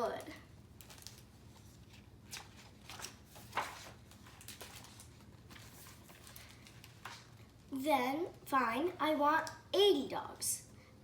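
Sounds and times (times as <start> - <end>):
book pages turning: 0.8 - 7.6.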